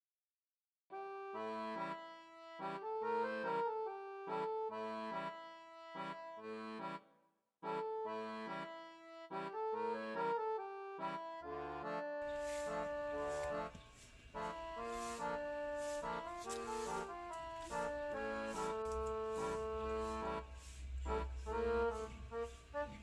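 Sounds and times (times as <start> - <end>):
bouncy instrumental music: 0.9 - 23.0.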